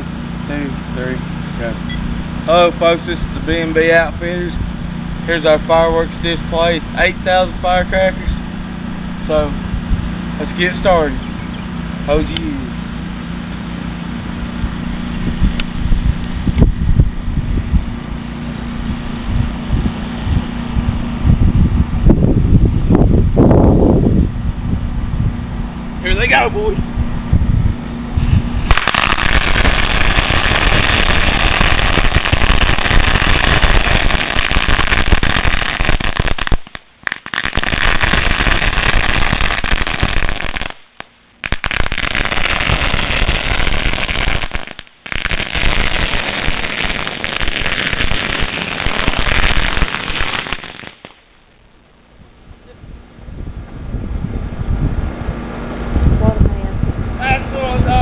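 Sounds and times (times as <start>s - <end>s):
string of firecrackers crackling: 28.4s - 51.9s.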